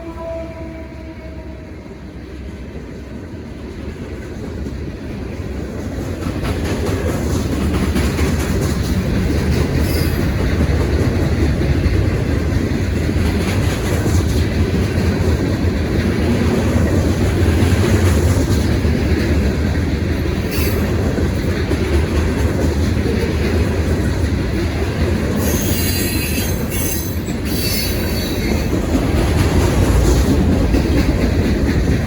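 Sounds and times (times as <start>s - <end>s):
freight train rumbling past: 0.0s - 32.0s
train wheels squealing: 9.8s - 10.4s, 20.4s - 21.0s, 25.4s - 28.8s.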